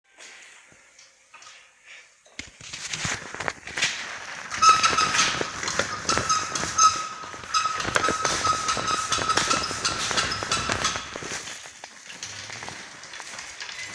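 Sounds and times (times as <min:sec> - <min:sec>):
high-pitched pulsing squeak: 0:04.5 - 0:11.3
moped motor clattering: 0:04.5 - 0:13.9.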